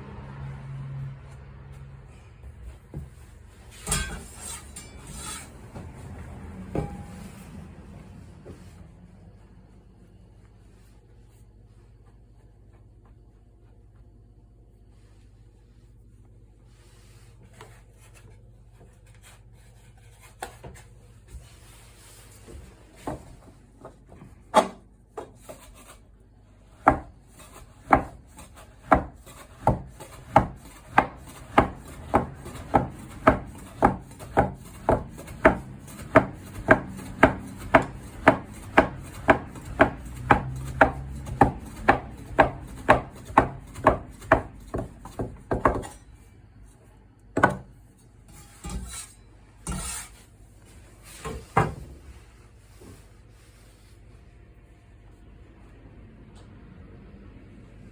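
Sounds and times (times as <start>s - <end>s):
knife chopping dough on wooden board: 26.7s - 46.1s, 47.4s - 47.8s.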